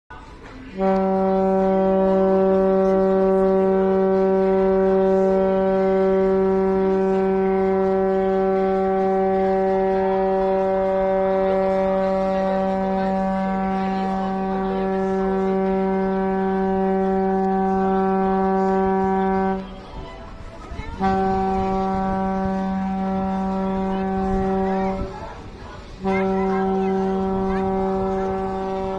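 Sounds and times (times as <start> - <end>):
ship horn long blast: 0.3 - 28.9.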